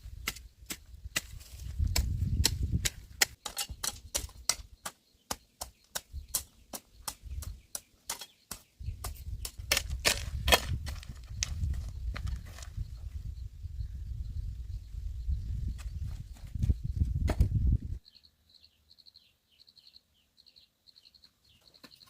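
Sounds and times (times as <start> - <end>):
dry corn stalks snapping: 9.7 - 11.6.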